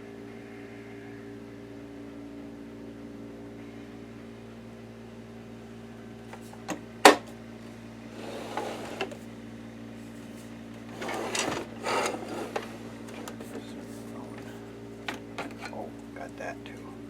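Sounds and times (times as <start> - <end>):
steady low hum: 0.0 - 17.0
plastic parts scraping and rustling: 10.8 - 15.8.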